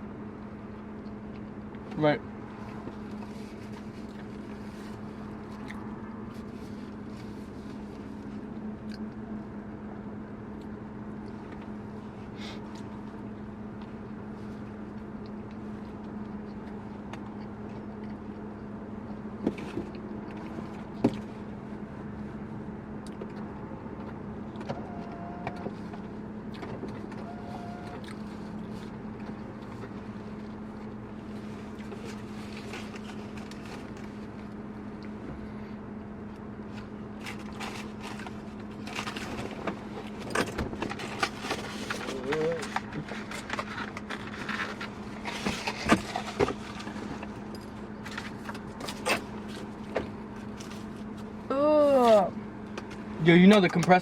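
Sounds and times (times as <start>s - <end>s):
car cabin hum: 0.0s - 54.0s.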